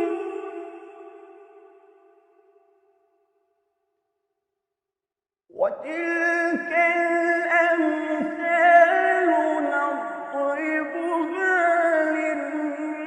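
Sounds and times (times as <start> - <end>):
person chanting: 0.0 - 1.7, 5.5 - 13.0.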